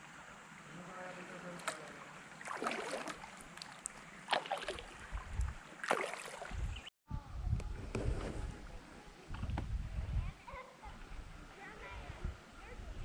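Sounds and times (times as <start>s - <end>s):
low steady water wash: 0.0s - 6.9s
kayak paddle splashing in water: 1.4s - 6.8s.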